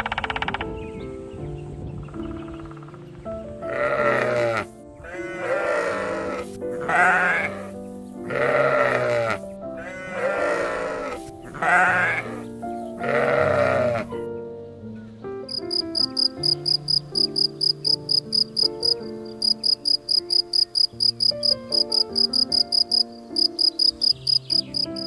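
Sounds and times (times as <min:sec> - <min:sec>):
sheep bleating: 0:08.3 - 0:12.4.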